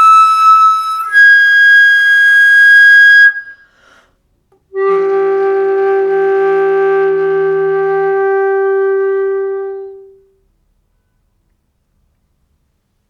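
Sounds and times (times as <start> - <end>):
flute notes: 0.0 - 4.0, 4.7 - 10.4.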